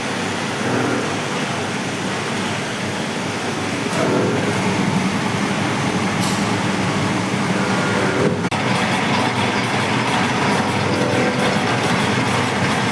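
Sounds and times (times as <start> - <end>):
lathe cutting metal: 7.5 - 12.9.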